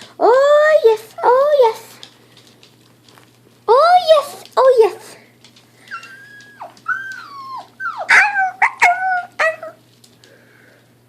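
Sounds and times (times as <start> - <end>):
puppies whimpering: 5.8 - 9.8.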